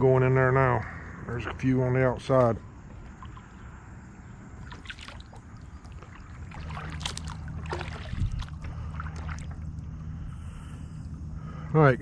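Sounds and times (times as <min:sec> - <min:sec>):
low steady hum: 0:00.0 - 0:12.0
water lapping against a hull: 0:02.7 - 0:12.0.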